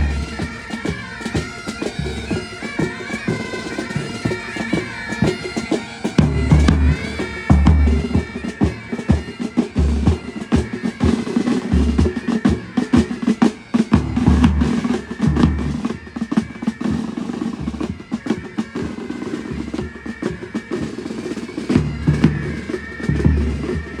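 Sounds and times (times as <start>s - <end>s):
snare drum rolls: 6.1s - 24.0s
bass drum beats: 14.0s - 15.7s.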